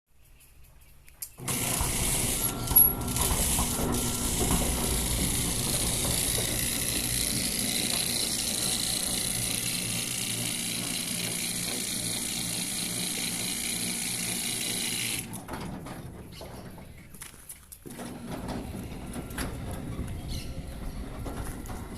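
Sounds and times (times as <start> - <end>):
fan whirring: 1.4 - 16.6.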